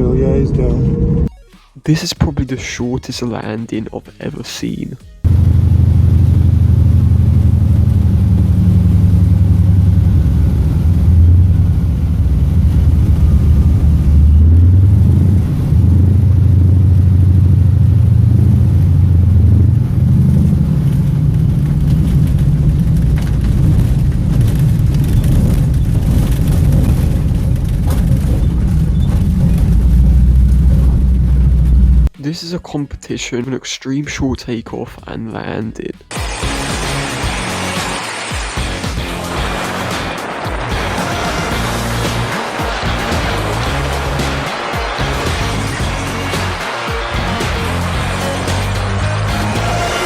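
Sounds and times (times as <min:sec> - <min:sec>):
light aircraft engine droning: 0:05.3 - 0:26.4.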